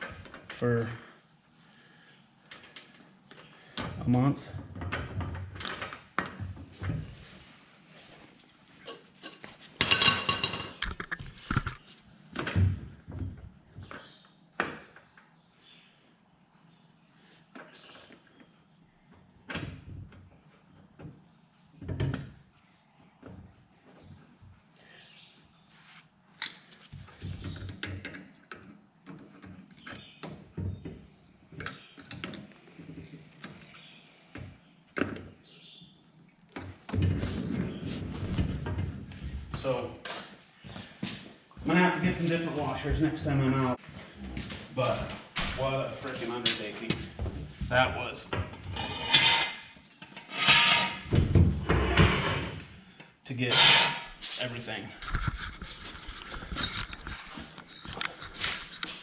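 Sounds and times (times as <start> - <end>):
metal tools clattering: 8.1 - 11.0, 48.3 - 51.1, 55.0 - 59.0.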